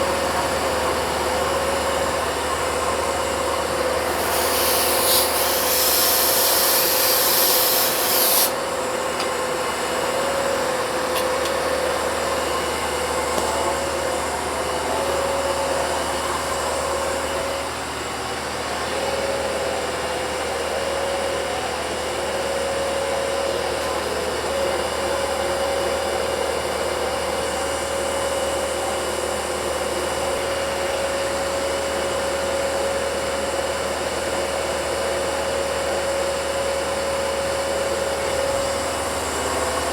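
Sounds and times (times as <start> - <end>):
milling machine cutting metal: 3.3 - 8.9
loud hiss: 4.0 - 8.6.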